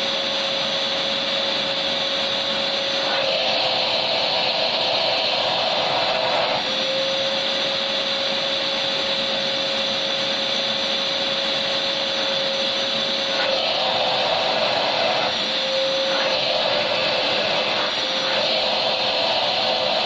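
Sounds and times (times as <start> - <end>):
vacuum cleaner air rush: 0.0 - 20.0
vacuum motor whine: 0.0 - 20.0.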